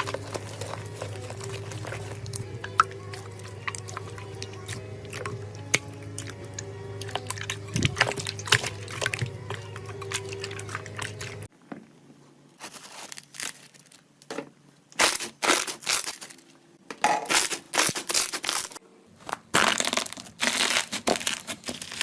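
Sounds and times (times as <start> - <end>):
slime crackling bursts: 0.0 - 6.4, 15.0 - 16.4, 17.3 - 22.0.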